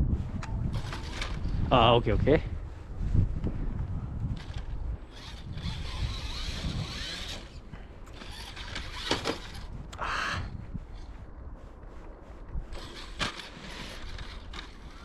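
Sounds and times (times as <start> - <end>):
toy truck electric motor whirring: 0.7 - 1.6, 4.4 - 9.7, 12.7 - 15.0.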